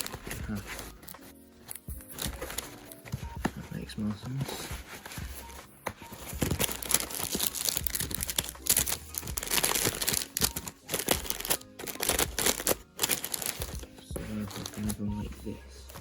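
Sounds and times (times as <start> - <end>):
packaging crinkling: 6.2 - 15.0.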